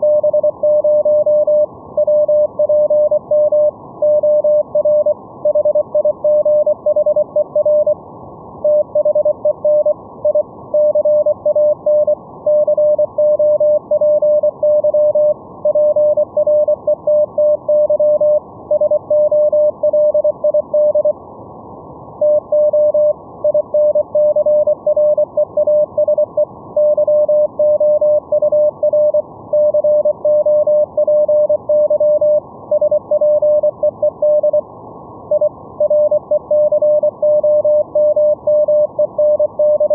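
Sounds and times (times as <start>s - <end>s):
receiver hiss: 0.0s - 39.9s
morse code tone: 22.2s - 34.6s.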